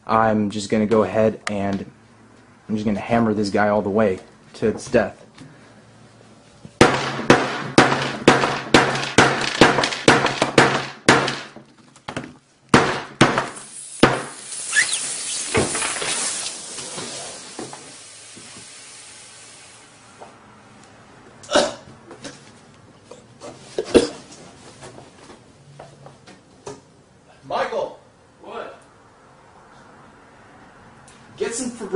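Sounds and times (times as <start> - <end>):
battery hissing: 13.6 - 20.0.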